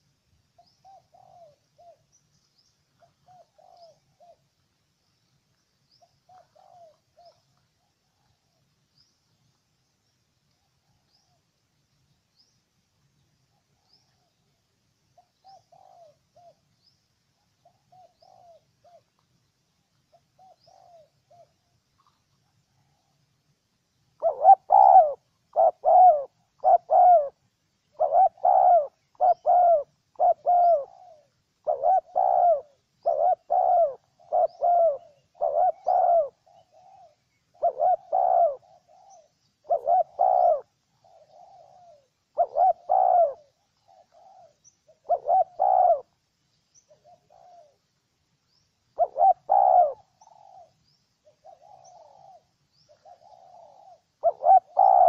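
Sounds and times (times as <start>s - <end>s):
dove cooing: 0.6s - 2.1s, 3.0s - 4.5s, 6.0s - 8.6s, 15.2s - 16.7s, 17.6s - 19.2s, 20.1s - 23.2s, 24.2s - 46.2s, 46.8s - 47.8s, 49.0s - 55.0s.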